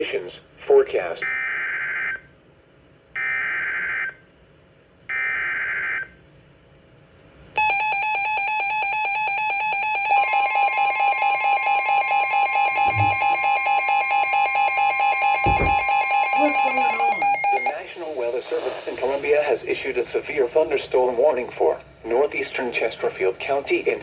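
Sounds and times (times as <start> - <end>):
pulsing alarm tone: 7.6 - 17.8
digital data tone bursts: 11.2 - 17.8.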